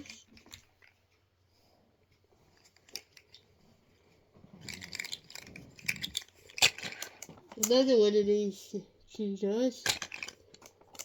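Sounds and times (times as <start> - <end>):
plastic toys clicking and clattering: 0.0 - 1.2, 2.5 - 3.6, 4.5 - 8.3, 9.1 - 11.0.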